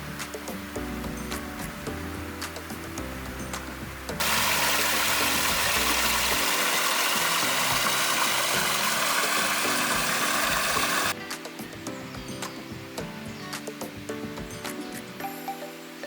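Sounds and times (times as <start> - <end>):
rushing stream water: 0.0 - 11.6.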